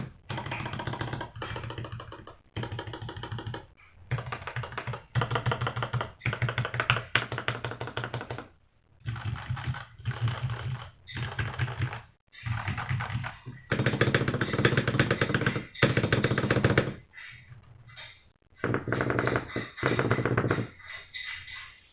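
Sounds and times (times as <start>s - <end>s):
mechanical keyboard typing clacks: 0.0s - 17.0s.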